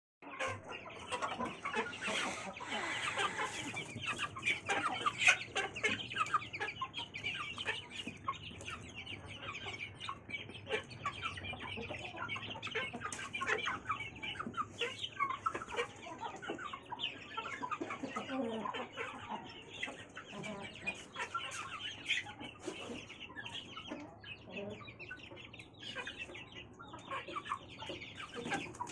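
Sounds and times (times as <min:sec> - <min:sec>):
chickens clucking: 0:00.2 - 0:28.9.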